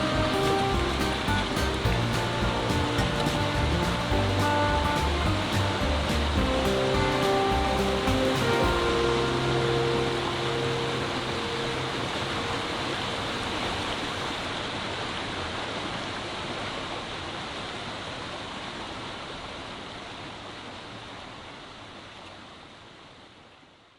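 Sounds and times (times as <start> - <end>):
background music: 0.0 - 13.6
steady rushing noise: 0.0 - 14.9.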